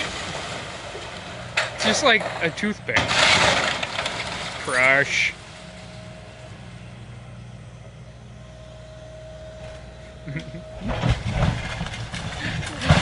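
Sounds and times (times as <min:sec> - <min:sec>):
wreckage crunching and crashing: 0:00.0 - 0:05.2, 0:10.8 - 0:13.0
machine engine humming: 0:00.0 - 0:13.0
thin steady whine: 0:04.6 - 0:11.8.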